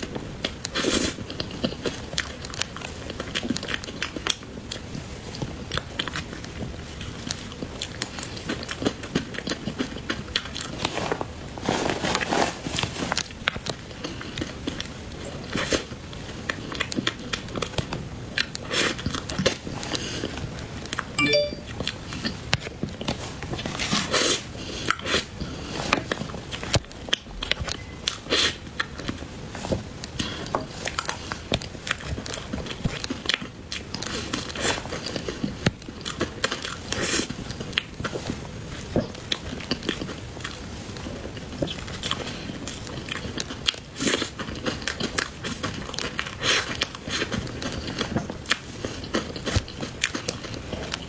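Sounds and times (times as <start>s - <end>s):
biting and chewing cake: 0.0s - 11.6s, 22.6s - 51.0s.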